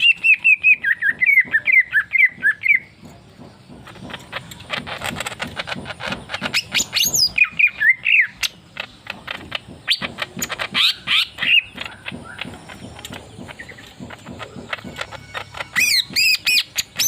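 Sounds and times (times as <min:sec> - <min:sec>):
bird singing chattering song: 0:00.0 - 0:17.0
sliding bird whistles: 0:14.8 - 0:17.0.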